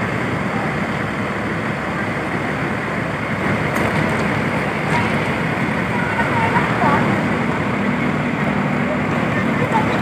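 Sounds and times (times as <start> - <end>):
road traffic rumble: 0.0 - 10.0.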